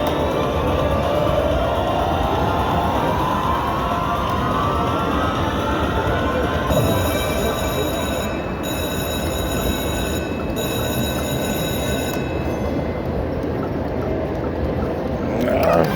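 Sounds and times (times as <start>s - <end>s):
machine and crowd noise: 0.0s - 15.9s
slot machine electronic tones: 6.7s - 12.8s.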